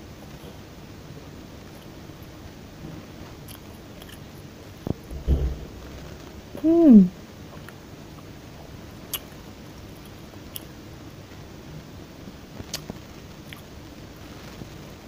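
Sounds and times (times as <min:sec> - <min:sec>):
steady low hiss: 0:00.0 - 0:15.0
chewing fried chicken: 0:03.4 - 0:04.5, 0:07.5 - 0:10.8, 0:12.6 - 0:13.8.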